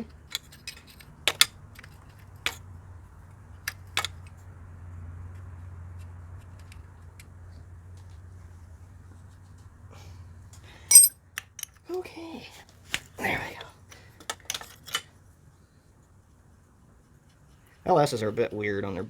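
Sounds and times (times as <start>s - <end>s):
metal hand tools clinking: 10.9s - 11.2s.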